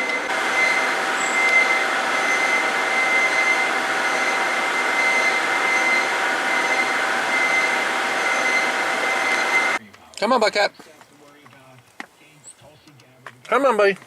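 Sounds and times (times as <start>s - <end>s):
machine whirring: 0.0s - 9.8s
high steady whine: 0.0s - 9.9s.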